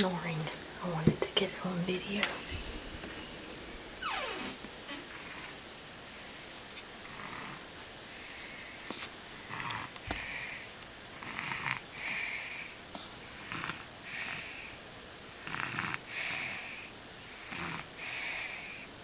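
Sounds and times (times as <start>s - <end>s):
baby snoring: 7.0s - 7.6s, 9.4s - 14.8s, 15.4s - 18.9s.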